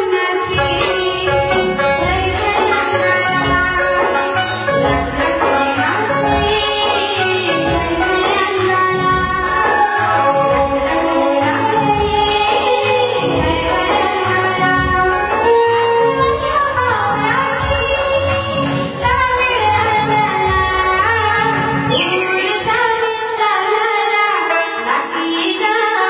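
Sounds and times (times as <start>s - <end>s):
girl singing: 0.0s - 26.0s
instrumental accompaniment: 0.0s - 26.0s
steady percussion beat: 0.5s - 7.0s.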